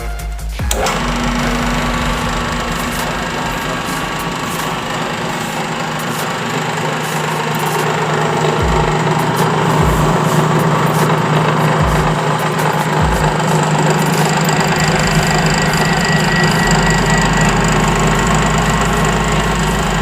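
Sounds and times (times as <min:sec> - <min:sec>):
small engine humming: 0:00.6 - 0:20.0
low thumps: 0:08.2 - 0:20.0.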